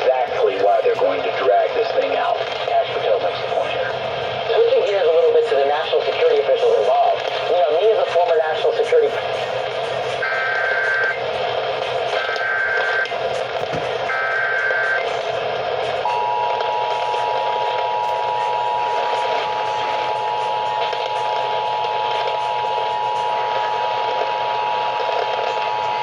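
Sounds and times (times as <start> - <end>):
radio static hiss: 0.0 - 26.0
two-tone attention signal: 16.0 - 20.8.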